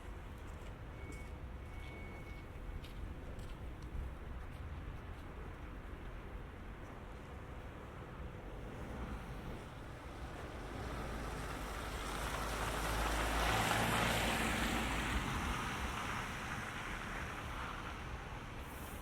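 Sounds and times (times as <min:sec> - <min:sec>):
vehicle passing by: 0:08.4 - 0:18.3.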